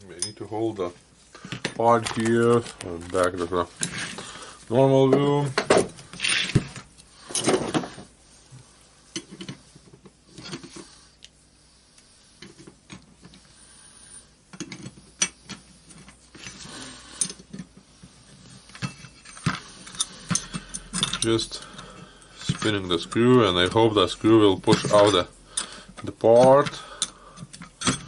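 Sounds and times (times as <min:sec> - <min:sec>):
metal tools clinking and scraping: 0:00.0 - 0:00.6, 0:01.5 - 0:04.3, 0:05.0 - 0:08.1, 0:14.6 - 0:17.7, 0:18.4 - 0:28.0.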